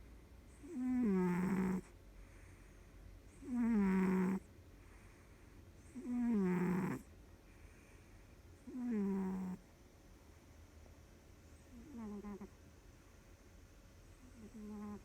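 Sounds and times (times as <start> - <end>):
cat snoring: 0.6 - 2.5, 3.3 - 5.1, 5.8 - 7.1, 8.6 - 9.6, 11.7 - 12.5, 14.3 - 15.0.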